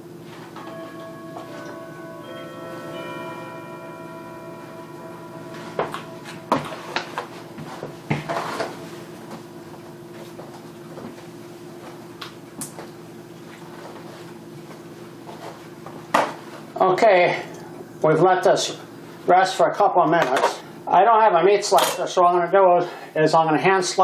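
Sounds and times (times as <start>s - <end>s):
low hum: 0.0s - 19.3s
chime-like ringing: 0.6s - 13.3s.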